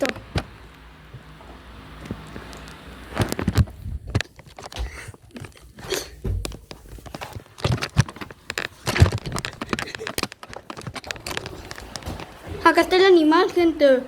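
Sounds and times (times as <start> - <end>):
crunching and rustling: 2.2 - 13.0.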